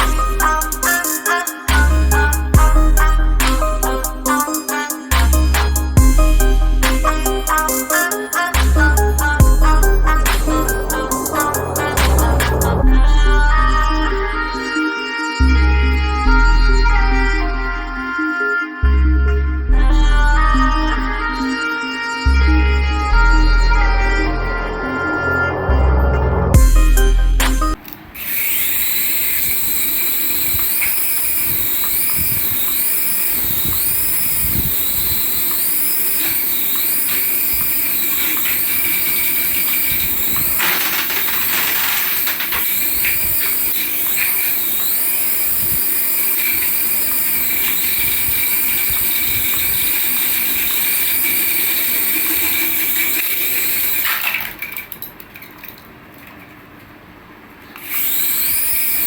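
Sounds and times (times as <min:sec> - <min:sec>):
high warbling electronic tone: 0:00.0 - 0:18.1, 0:19.0 - 0:27.8.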